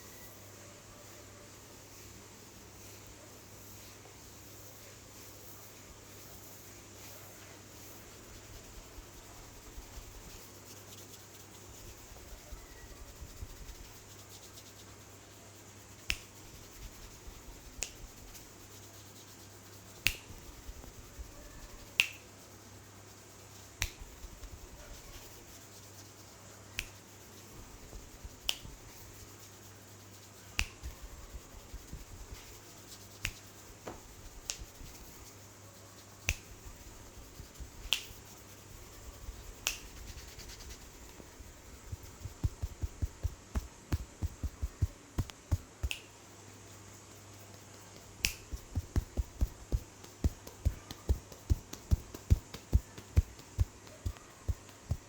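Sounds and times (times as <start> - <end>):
finger snaps: 15.9 - 18.8, 19.9 - 22.4, 23.7 - 25.3, 26.6 - 29.3, 30.2 - 35.4, 36.2 - 46.2, 47.1 - 55.0.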